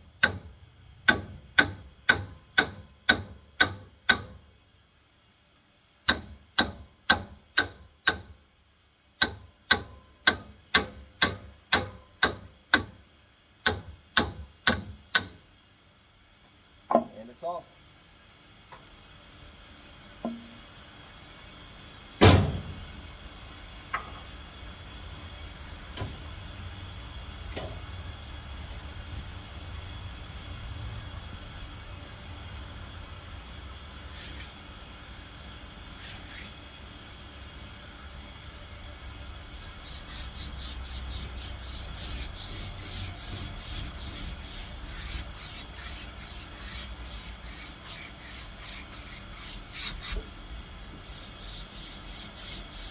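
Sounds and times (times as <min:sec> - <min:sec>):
sharp knocks on metal: 0:01.1 - 0:04.4, 0:13.7 - 0:15.4, 0:16.9 - 0:17.2, 0:22.2 - 0:22.7
rasping filing strokes: 0:39.5 - 0:50.2, 0:51.0 - 0:52.9.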